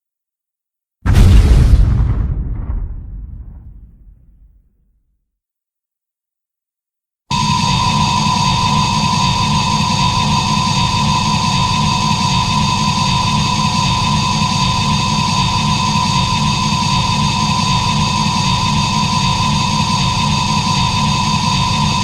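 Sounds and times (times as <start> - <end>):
fluttering low rumble: 1.1 - 4.6
constant high whine: 7.3 - 22.0.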